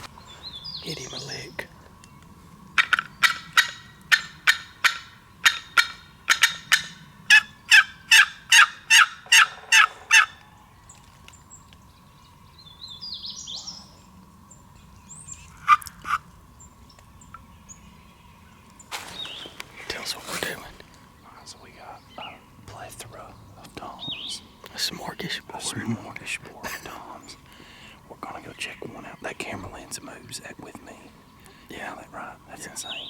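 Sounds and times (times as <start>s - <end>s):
turkey call yelps: 2.8s - 10.7s, 15.6s - 16.3s.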